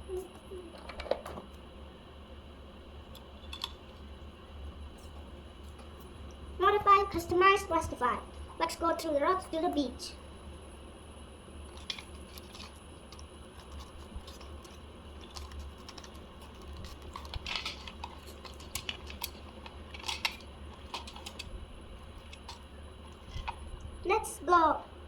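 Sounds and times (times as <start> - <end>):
plastic pieces rattling: 11.7 - 23.6
plastic toy pieces clicking: 15.2 - 21.5.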